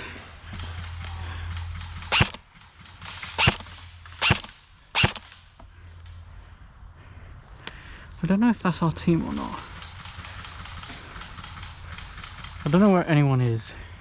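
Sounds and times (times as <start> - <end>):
airsoft gun shots: 2.1 - 2.4, 3.2 - 5.4.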